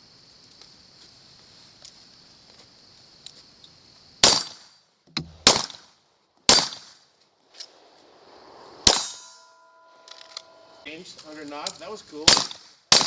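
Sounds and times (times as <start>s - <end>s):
suppressed gunshots: 4.2s - 4.6s, 5.2s - 5.9s, 6.5s - 7.0s, 8.8s - 9.3s, 12.3s - 13.0s.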